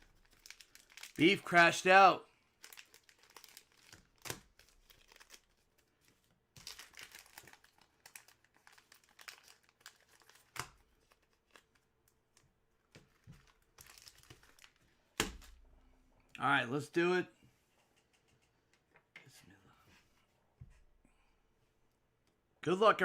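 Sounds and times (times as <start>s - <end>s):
plastic wrapping crinkling: 0.0s - 1.5s, 2.5s - 15.6s.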